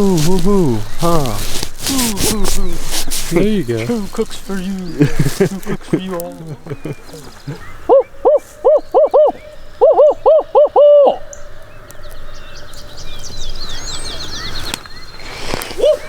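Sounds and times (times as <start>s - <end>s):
imitated owl hoots: 4.8s - 11.8s, 15.8s - 16.0s.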